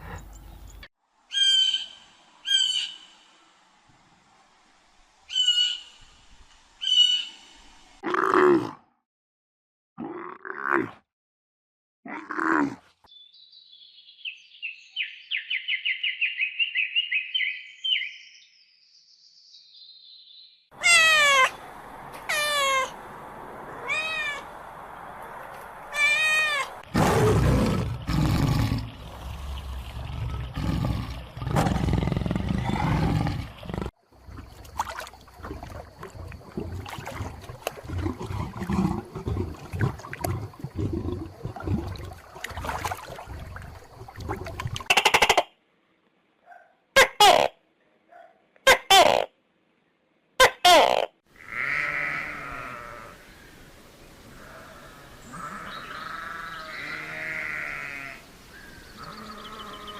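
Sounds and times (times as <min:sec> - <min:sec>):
falling pitched animal calls: 0:20.8 - 0:21.6, 0:22.3 - 0:23.0, 0:23.8 - 0:24.5, 0:25.9 - 0:26.8
low rough animal calls: 0:59.0 - 0:59.9.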